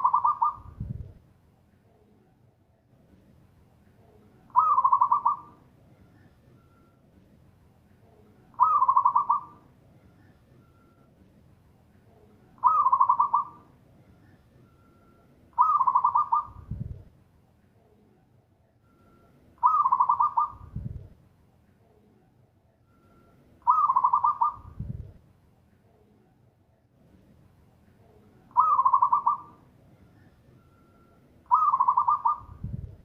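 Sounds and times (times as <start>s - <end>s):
dove cooing: 0.0s - 0.8s, 4.5s - 5.6s, 8.5s - 10.4s, 12.6s - 14.4s, 15.6s - 16.7s, 19.6s - 20.7s, 23.6s - 24.8s, 28.5s - 32.8s.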